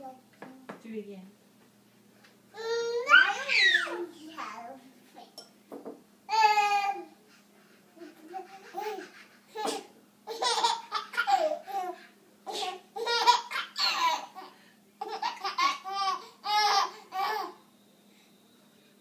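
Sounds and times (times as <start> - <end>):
small child giggling: 8.0 - 9.7.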